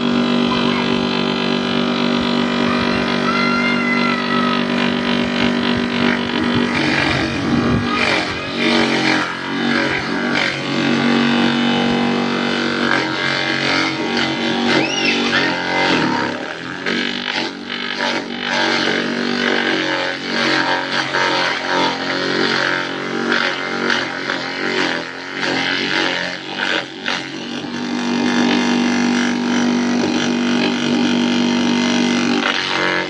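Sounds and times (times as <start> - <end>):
electric motor chopping machine drone: 0.0 - 33.0.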